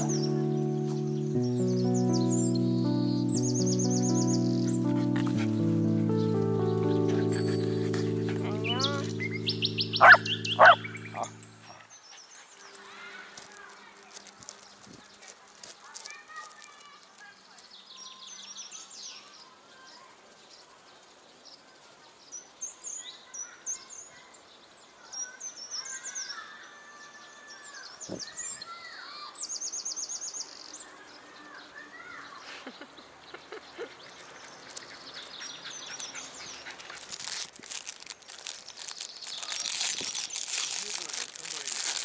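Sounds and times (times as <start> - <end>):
birds chirping and whistling: 6.7 - 11.8
bird trill: 8.6 - 11.8.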